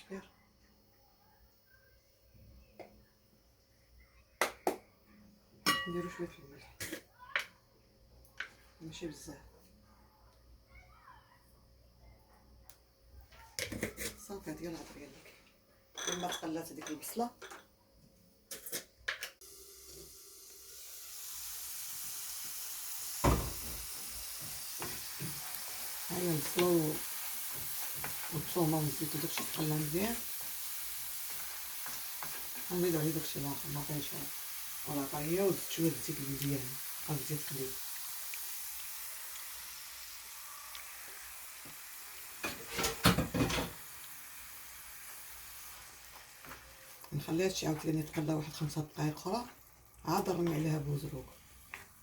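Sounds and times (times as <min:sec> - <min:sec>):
onion and garlic sizzling in oil: 0:05.6 - 0:07.0, 0:19.4 - 0:52.0.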